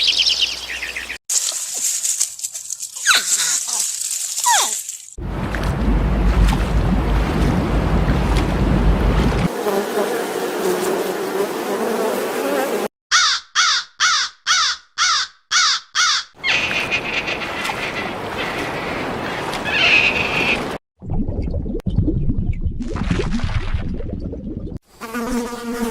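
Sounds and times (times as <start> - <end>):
outdoor background noise: 0.0 - 12.8.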